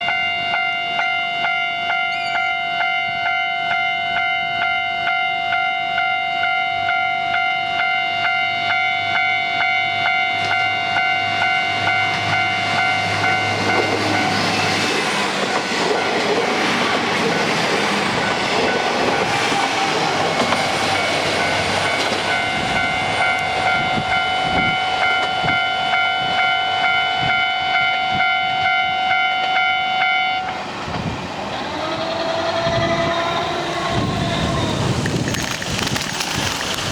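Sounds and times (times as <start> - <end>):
level crossing bell ringing: 0.0 - 14.4
train rumble: 7.8 - 36.9.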